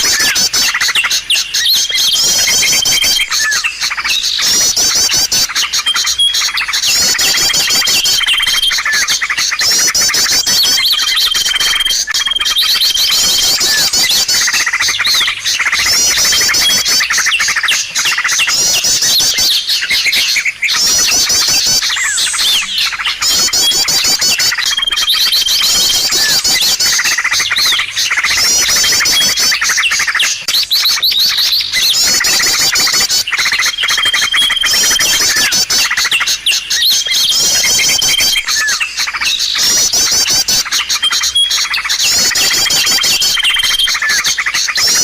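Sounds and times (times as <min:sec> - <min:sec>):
small birds chirping: 0:00.0 - 0:45.0.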